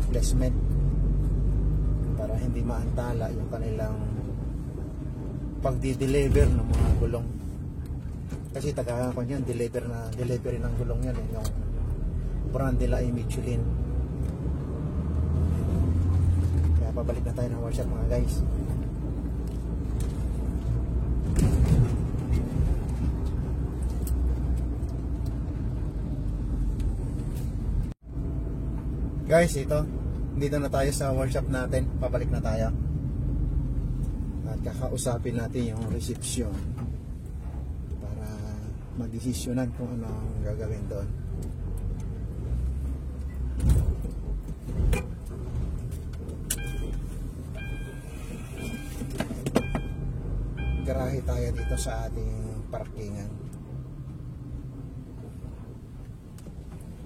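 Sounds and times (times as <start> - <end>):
vehicle engine and road rumble: 0.0 - 57.0
short electronic beep: 46.5 - 52.1
knocks and rattles in cab: 48.6 - 50.0.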